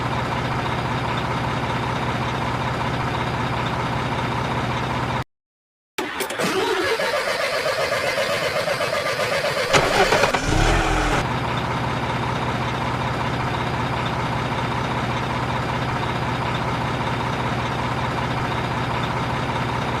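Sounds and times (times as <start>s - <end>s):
diesel truck engine idling: 8.4s - 18.7s.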